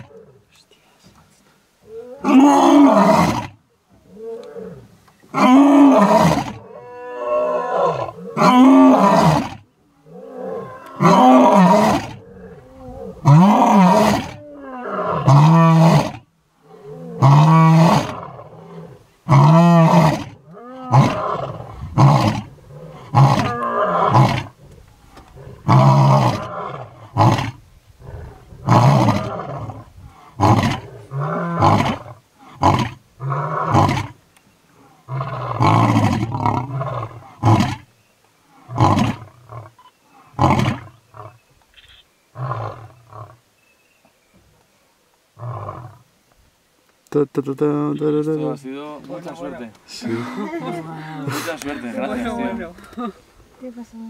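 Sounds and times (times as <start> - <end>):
lion roaring: 1.8 - 34.2, 34.8 - 37.8.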